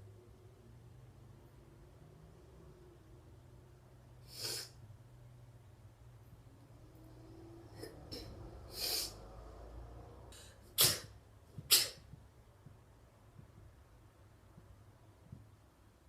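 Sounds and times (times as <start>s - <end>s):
soft breathy puffs: 4.2s - 4.8s, 7.8s - 9.5s
person sneezing: 4.3s - 4.8s, 10.4s - 12.1s.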